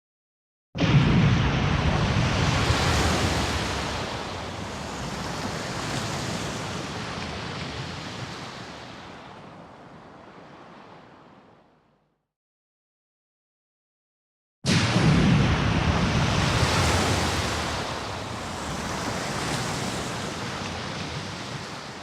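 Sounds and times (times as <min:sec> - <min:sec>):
rushing noise with deep rumble: 0:00.8 - 0:07.2, 0:14.7 - 0:22.0.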